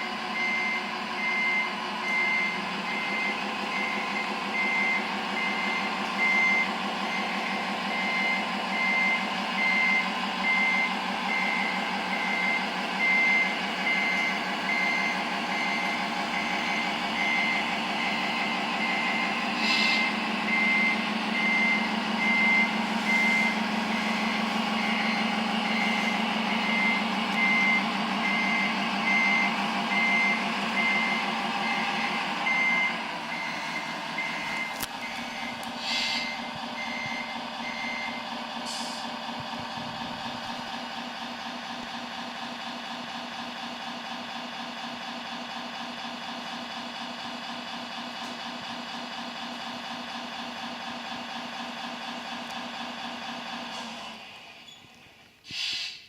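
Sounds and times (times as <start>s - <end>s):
reversing beeper: 0.0s - 40.6s
simulated truck engine running: 0.0s - 56.0s.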